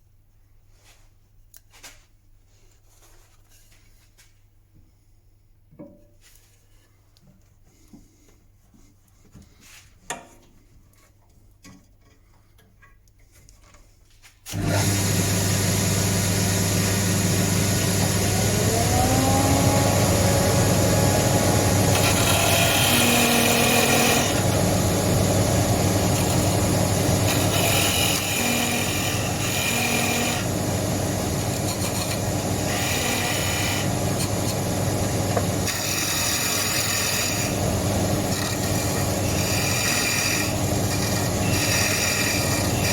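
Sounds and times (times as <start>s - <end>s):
tool scraping spinning wood: 14.5s - 42.9s
wood lathe motor hum: 14.5s - 42.9s.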